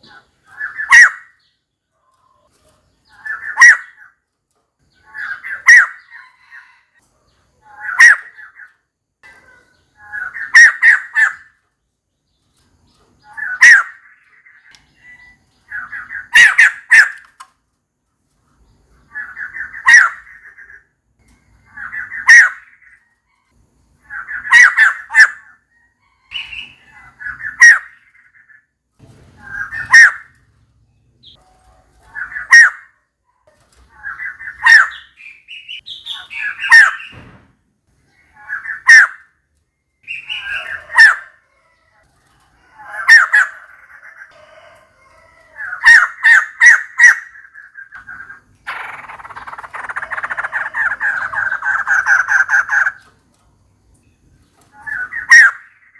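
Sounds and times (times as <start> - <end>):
bird calling: 0.0 - 1.6, 3.0 - 4.2, 4.9 - 7.0, 7.6 - 11.6, 13.2 - 17.5, 19.0 - 23.1, 24.0 - 28.8, 29.4 - 30.5, 32.0 - 33.0, 33.8 - 37.4, 38.1 - 39.4, 40.0 - 41.4, 42.7 - 44.8, 45.5 - 53.1, 54.6 - 55.9.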